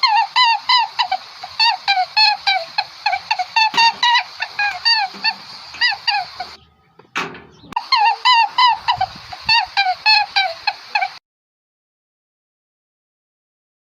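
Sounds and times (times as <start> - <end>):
high-pitched animal calls: 0.0 - 6.7, 7.6 - 11.2.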